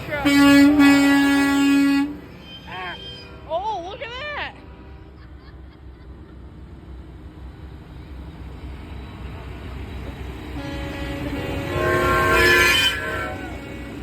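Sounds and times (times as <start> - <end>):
diesel truck engines droning: 0.0 - 14.0
truck air horn: 0.1 - 2.2, 10.6 - 14.0.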